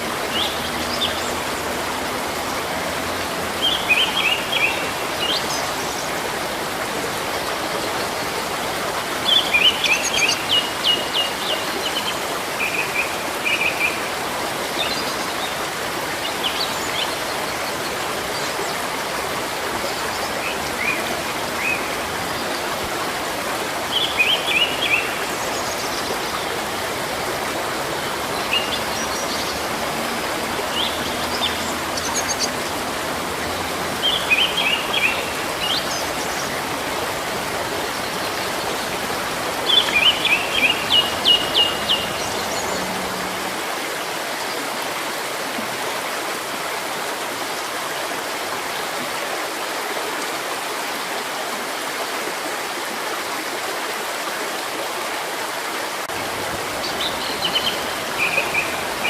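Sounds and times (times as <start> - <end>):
stream running water: 0.0 - 59.0
small birds chirping: 28.0 - 43.2.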